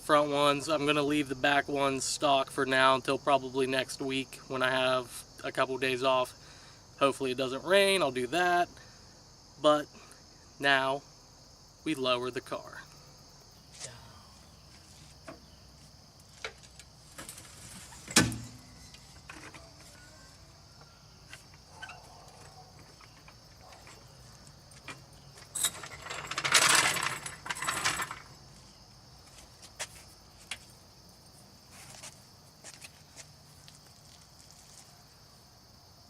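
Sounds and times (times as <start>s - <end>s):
crickets chirring: 0.0s - 36.0s
sharp metal clunk: 18.1s - 18.8s
floor jack ratcheting and rattling: 25.5s - 28.3s.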